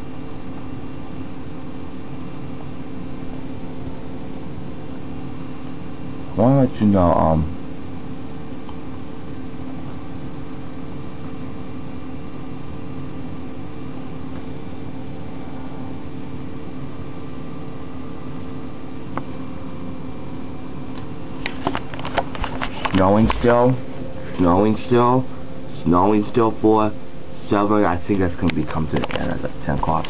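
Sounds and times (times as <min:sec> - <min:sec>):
machine hum: 0:00.0 - 0:30.0.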